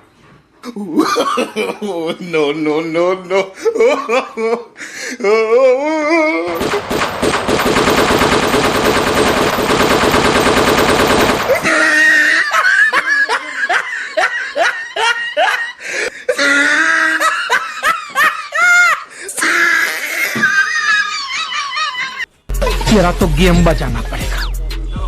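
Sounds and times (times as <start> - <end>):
person laughing hard: 0.7 - 2.5, 3.2 - 6.6, 11.5 - 24.6
machine-gun fire sound effect: 6.6 - 11.8.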